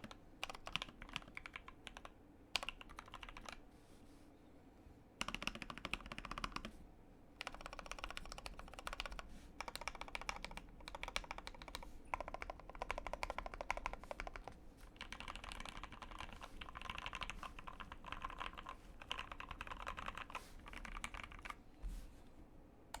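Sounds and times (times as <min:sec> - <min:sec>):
fast mechanical keyboard typing: 0:00.0 - 0:03.6, 0:05.2 - 0:06.7, 0:07.4 - 0:21.6.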